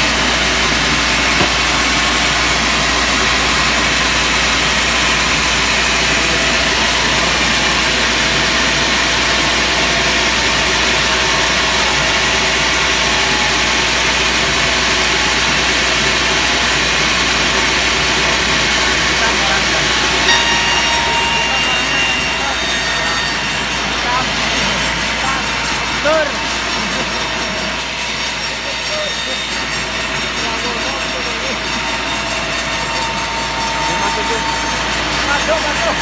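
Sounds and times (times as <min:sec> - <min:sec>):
sawmill saw cutting wood: 0:13.8 - 0:36.0.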